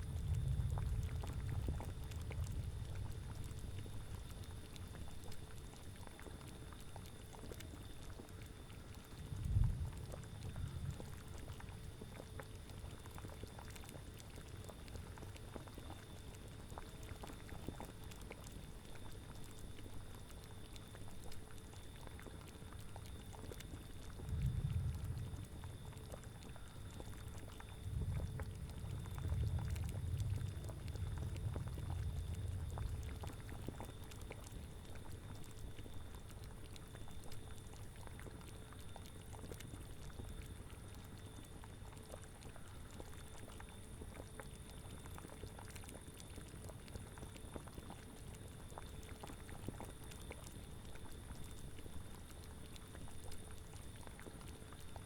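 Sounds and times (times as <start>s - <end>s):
low rumbling wind: 0.0s - 5.1s, 9.2s - 11.8s, 24.2s - 35.2s
liquid boiling and bubbling: 0.0s - 55.0s.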